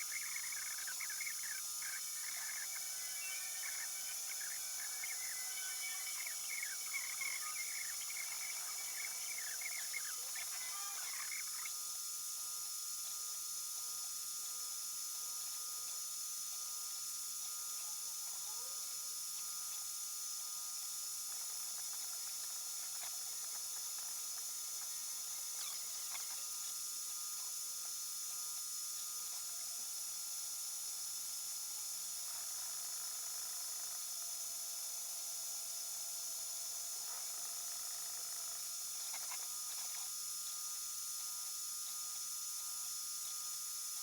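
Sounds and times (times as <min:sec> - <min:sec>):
steady high-pitched hiss: 0:00.0 - 0:11.8.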